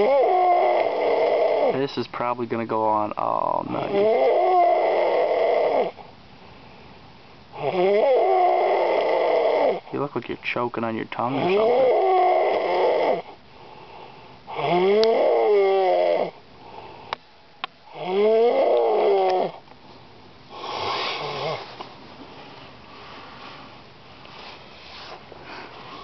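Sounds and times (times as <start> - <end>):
man snoring loudly: 0.0 - 1.9, 3.2 - 6.0, 7.6 - 9.9, 11.2 - 13.3, 14.5 - 16.4, 17.9 - 19.6, 20.5 - 21.7.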